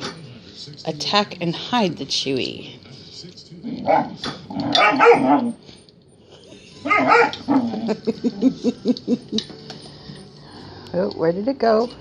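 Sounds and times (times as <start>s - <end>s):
puppy barking: 3.9s - 5.6s, 6.8s - 7.7s
puppy yipping: 4.7s - 5.6s.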